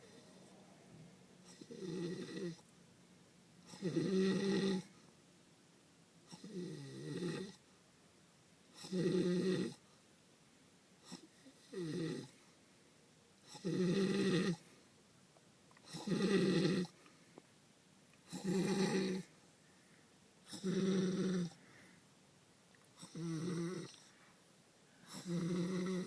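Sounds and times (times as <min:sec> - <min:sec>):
quiet breaths: 0:00.0 - 0:26.0
man snoring: 0:01.5 - 0:02.6, 0:03.7 - 0:04.9, 0:13.5 - 0:14.6, 0:15.9 - 0:17.0, 0:18.3 - 0:19.3, 0:20.5 - 0:21.6, 0:23.0 - 0:24.0, 0:25.1 - 0:26.0.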